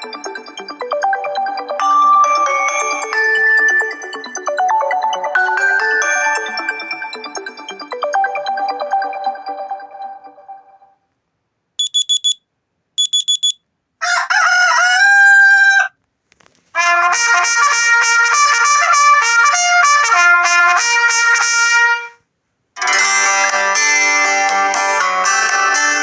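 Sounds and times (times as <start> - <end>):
melodic phone tone: 0.0 - 10.9
short high electronic beeps: 11.8 - 12.4, 13.0 - 13.6
gliding phone tone: 13.0 - 13.6.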